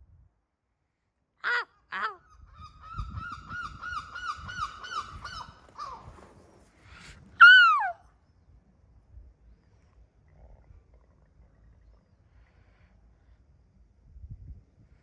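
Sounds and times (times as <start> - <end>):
seagull calling: 1.4 - 2.2, 7.4 - 8.0.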